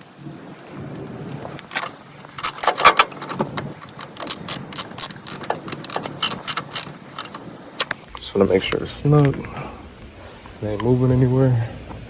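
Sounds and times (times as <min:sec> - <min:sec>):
ratchet wrench clicking: 0:00.0 - 0:08.1.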